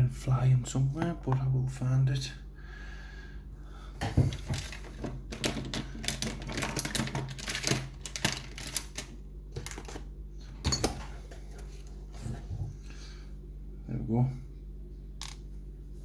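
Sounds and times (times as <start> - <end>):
lock cylinder and tools clicking: 5.3 - 9.2.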